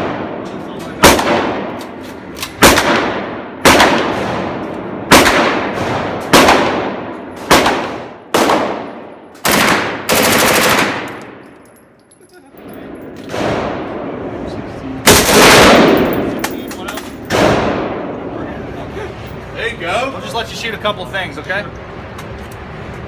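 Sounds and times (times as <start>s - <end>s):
gunshots with long echo: 0.0s - 0.4s, 1.0s - 1.8s, 2.6s - 11.4s, 13.3s - 14.4s, 15.0s - 16.4s, 17.3s - 18.2s
full-auto gunfire burst: 1.0s - 1.7s, 2.6s - 11.4s, 15.0s - 16.3s.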